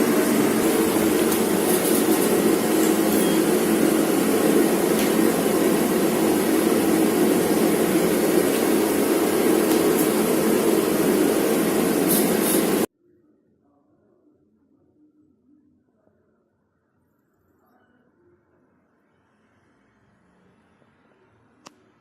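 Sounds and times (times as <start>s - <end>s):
motor-driven machine running: 0.0s - 12.9s.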